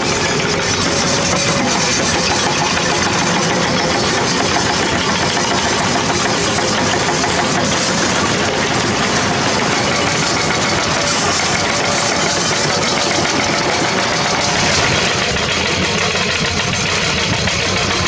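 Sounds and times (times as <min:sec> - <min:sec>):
excavator diesel engines running: 0:00.0 - 0:18.0.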